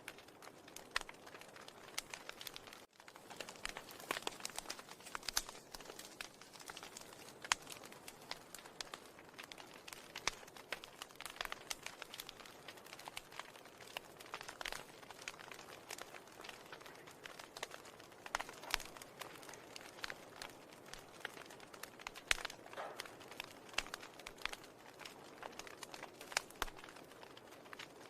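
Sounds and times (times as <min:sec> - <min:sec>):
faint crackling clicks: 0:00.0 - 0:28.0.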